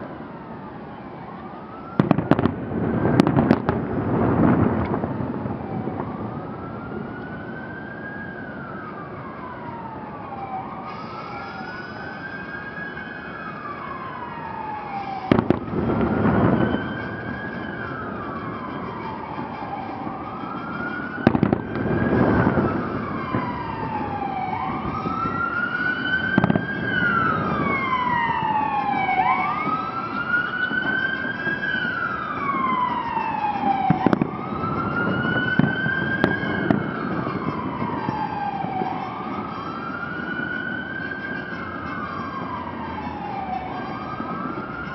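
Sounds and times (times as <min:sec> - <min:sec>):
siren wailing: 0:00.0 - 0:44.9
fireworks bursting with bangs: 0:02.0 - 0:06.2, 0:14.9 - 0:28.8, 0:29.6 - 0:42.6.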